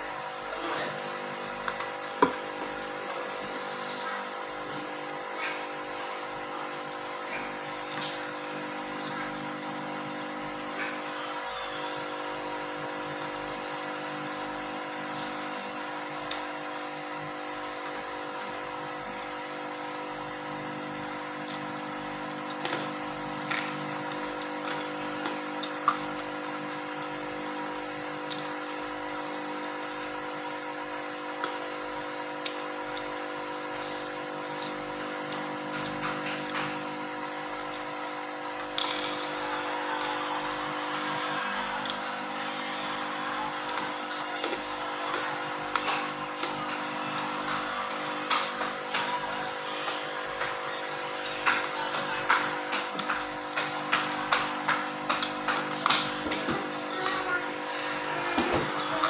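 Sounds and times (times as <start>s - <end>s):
person eating: 2.5s - 4.4s.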